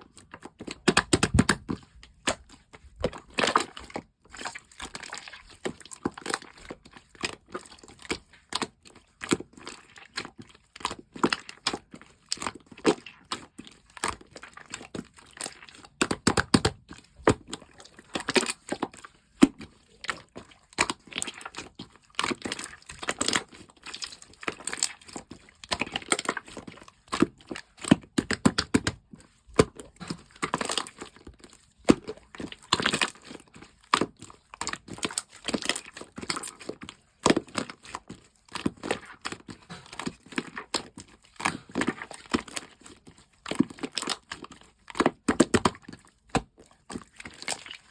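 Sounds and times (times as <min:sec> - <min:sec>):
slime squished by hand: 0:00.1 - 0:47.9.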